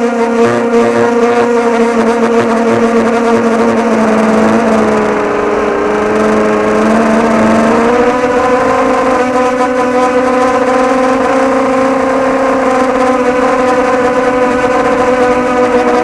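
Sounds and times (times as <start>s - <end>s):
quadcopter motors whining: 0.0s - 16.0s.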